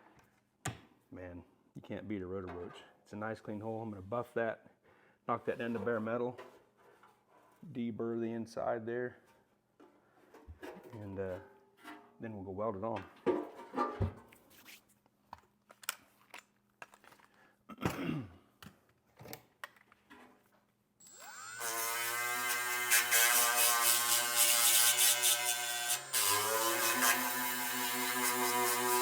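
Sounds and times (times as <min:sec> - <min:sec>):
electric grinder on metal: 0:21.0 - 0:29.0.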